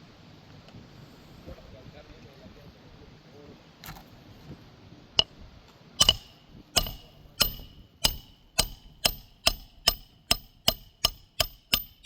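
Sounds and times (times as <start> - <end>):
hammer striking roofing nail: 6.0 - 12.0.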